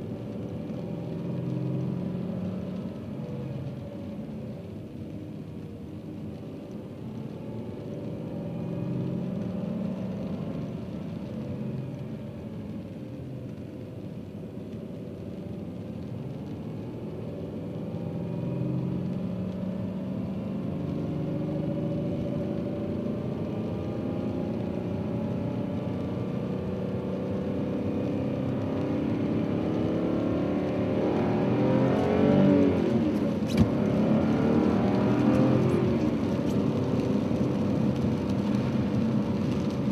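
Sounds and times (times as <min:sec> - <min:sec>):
car engine revving: 0:27.7 - 0:39.8.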